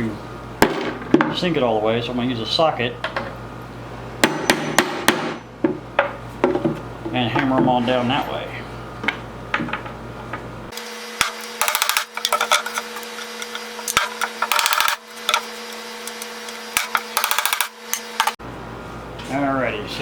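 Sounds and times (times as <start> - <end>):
steady low hum: 0.0 - 20.0
hammer striking a socket: 13.4 - 15.4, 16.0 - 18.4.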